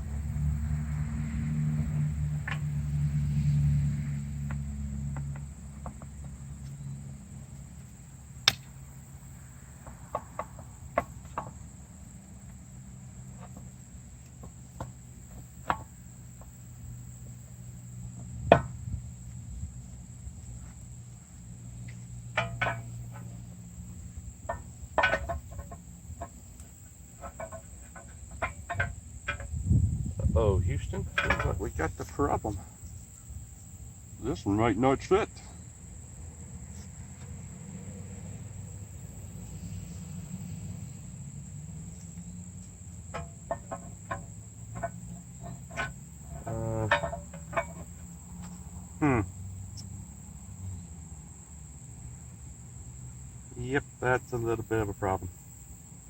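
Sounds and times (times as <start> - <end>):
metal parts clicking and knocking: 43.1 - 48.0.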